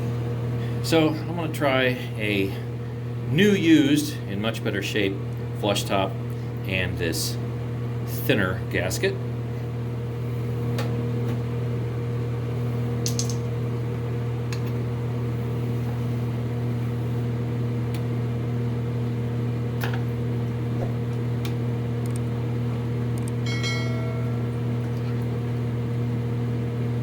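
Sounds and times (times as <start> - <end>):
noisy fan humming: 0.0 - 27.0
short ringing clink: 23.4 - 24.8.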